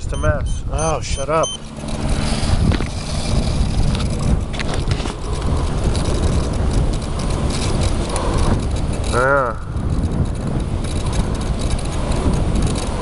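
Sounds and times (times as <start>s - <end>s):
light clicks and rattles: 0.0s - 13.0s
wind buffeting microphone: 0.0s - 13.0s.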